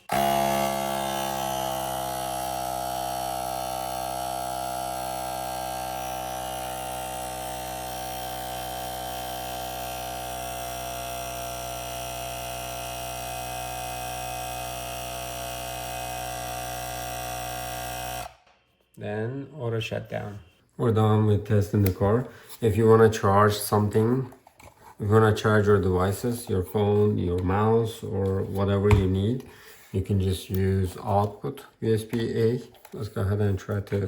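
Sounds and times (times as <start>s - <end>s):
small compressor buzzing: 0.0s - 18.6s.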